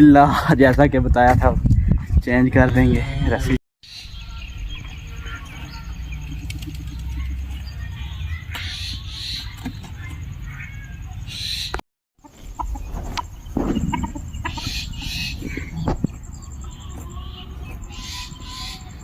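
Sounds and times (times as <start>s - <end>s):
chickens clucking and chirping: 3.8s - 19.0s.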